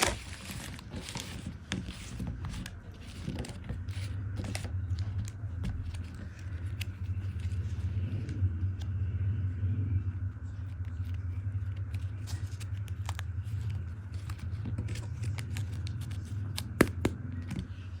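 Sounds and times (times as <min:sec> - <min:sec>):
packaging crinkling and clicking: 0:00.0 - 0:07.6, 0:11.7 - 0:17.2
steady low hum: 0:00.0 - 0:18.0.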